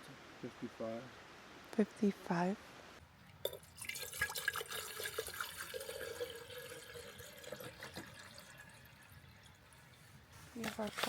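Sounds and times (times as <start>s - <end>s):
water pouring and dripping: 3.2s - 10.3s.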